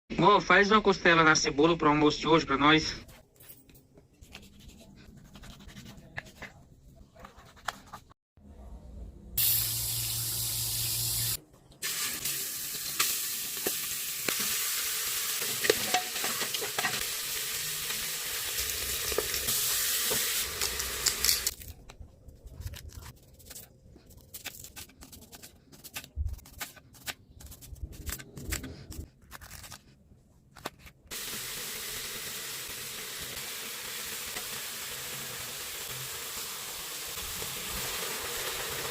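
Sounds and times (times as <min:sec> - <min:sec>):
ribs sizzling in a pan: 0:09.4 - 0:21.5, 0:31.1 - 0:38.9.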